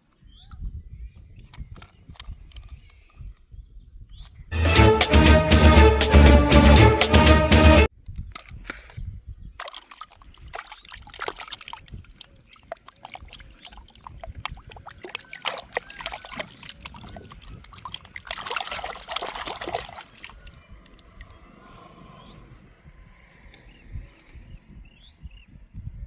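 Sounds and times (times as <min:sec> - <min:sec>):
water drips and bubbling plops: 0:09.6 - 0:21.4
water trickling and splashing: 0:09.6 - 0:21.4.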